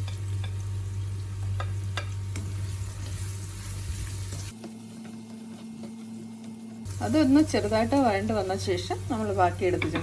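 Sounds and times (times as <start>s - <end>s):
onions sizzling in a pan: 0.0s - 10.0s.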